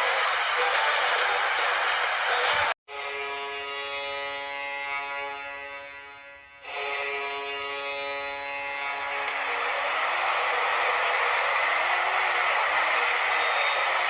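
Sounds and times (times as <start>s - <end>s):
crowd cheering: 0.0s - 2.8s, 8.7s - 14.0s.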